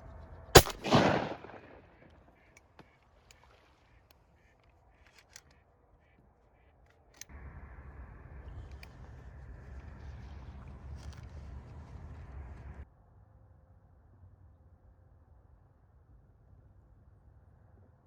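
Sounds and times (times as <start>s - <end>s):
shotgun blast: 0.6s - 2.0s.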